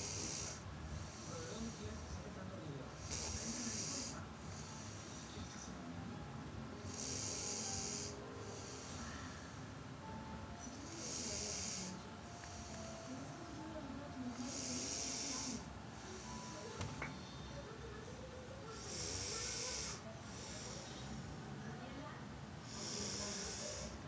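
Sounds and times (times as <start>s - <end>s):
person snoring: 0.0s - 1.8s, 3.0s - 5.3s, 6.8s - 9.6s, 10.8s - 13.1s, 14.3s - 16.8s, 18.8s - 21.1s, 22.7s - 24.0s.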